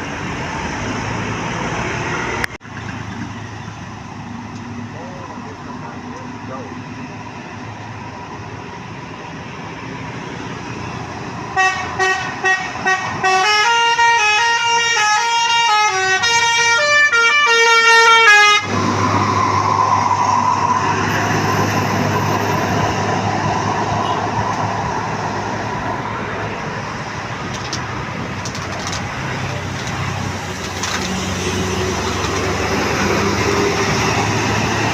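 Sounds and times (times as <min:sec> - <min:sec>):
bus passing: 0:00.0 - 0:34.9
musical air horn playing a tune: 0:11.6 - 0:18.7.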